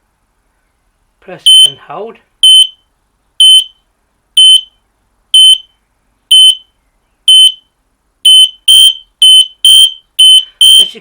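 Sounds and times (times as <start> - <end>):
smoke alarm beeping: 1.5 - 1.7, 2.4 - 2.8, 3.4 - 3.8, 4.4 - 4.8, 5.4 - 5.7, 6.3 - 6.7, 7.3 - 11.0
second smoke alarm beeping: 2.4 - 2.8, 3.4 - 3.8, 4.4 - 4.8, 5.4 - 5.7, 6.3 - 6.7, 7.3 - 10.9.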